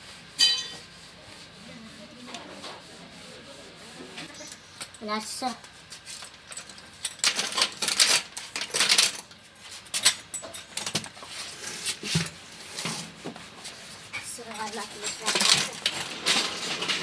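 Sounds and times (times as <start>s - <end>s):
hand tools and metal parts clattering: 0.4s - 0.9s, 6.0s - 13.1s, 14.1s - 17.0s.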